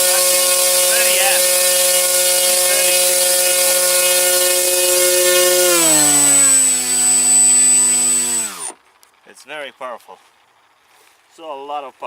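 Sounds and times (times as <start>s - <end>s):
electric motor propeller whine: 0.0s - 8.8s.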